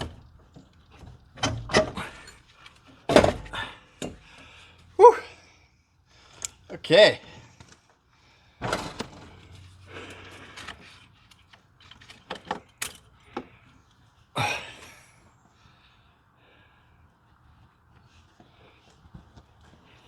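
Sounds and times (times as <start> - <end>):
metal tools clanking: 0.0 - 4.3, 8.6 - 13.2.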